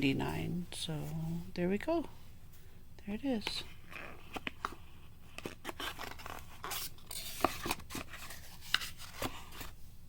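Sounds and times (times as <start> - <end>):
cardboard and paper rustling: 3.7 - 9.9.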